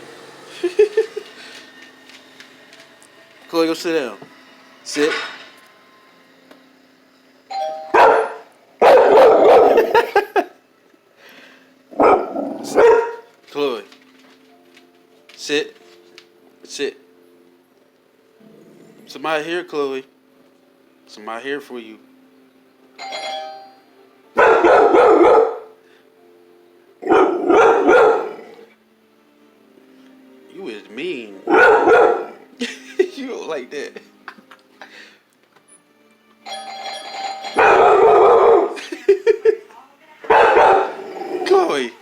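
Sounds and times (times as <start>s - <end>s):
two-tone doorbell chime: 7.5s - 8.2s, 23.0s - 24.0s, 36.4s - 37.9s
dog barking: 7.9s - 10.0s, 12.0s - 13.3s, 24.4s - 25.8s, 27.0s - 28.6s, 31.5s - 32.4s, 37.6s - 38.8s, 40.3s - 41.2s.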